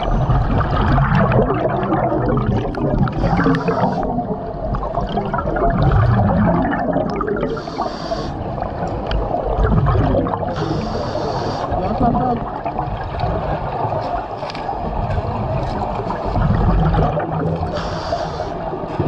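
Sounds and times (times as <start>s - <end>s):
exhaled bubbles gurgling: 0.0s - 19.0s
air hissing on inhale: 3.2s - 4.1s, 7.5s - 8.6s, 10.5s - 11.8s, 17.7s - 19.0s.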